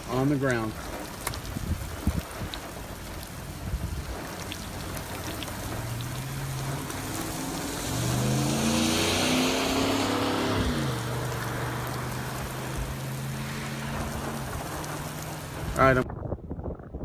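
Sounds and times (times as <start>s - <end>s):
rain: 0.0s - 16.0s
tyres hissing on wet road: 0.0s - 16.0s
vehicle engine accelerating: 5.1s - 16.0s.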